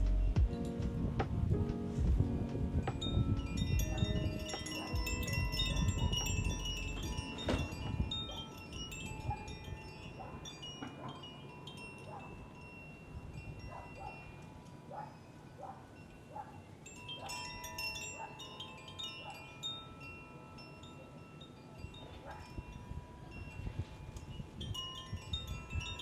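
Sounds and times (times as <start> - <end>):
low rumble: 0.0 - 4.2
wind chimes ringing: 2.7 - 26.0.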